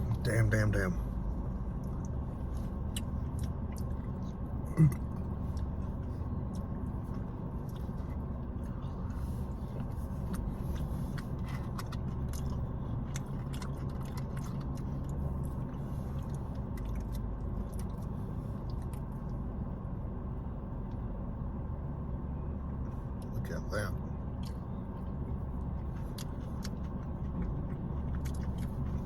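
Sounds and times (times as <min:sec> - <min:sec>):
car low hum: 0:00.0 - 0:29.0
person chewing food: 0:01.8 - 0:19.4, 0:24.4 - 0:29.0.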